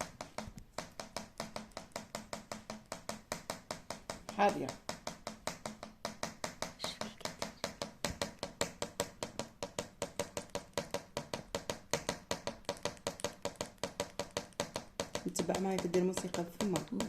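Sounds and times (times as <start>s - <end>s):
bird tapping beak: 0.0s - 17.0s.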